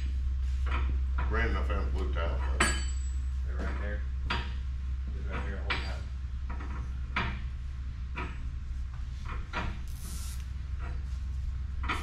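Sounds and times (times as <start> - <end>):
steady low hum: 0.0 - 12.0
short hiss: 9.9 - 10.5.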